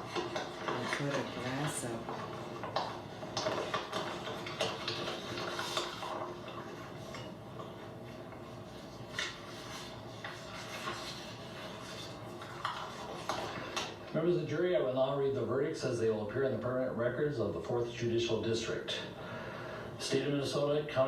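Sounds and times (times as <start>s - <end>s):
low room hum: 0.0s - 21.0s
paper rustling: 8.8s - 14.0s.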